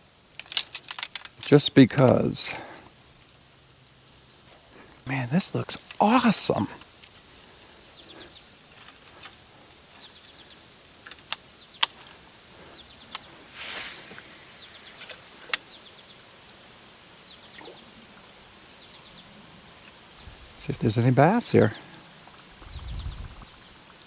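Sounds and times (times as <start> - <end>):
high chirping call of ticks: 0.0 - 16.1
sharp clicks: 0.3 - 2.6.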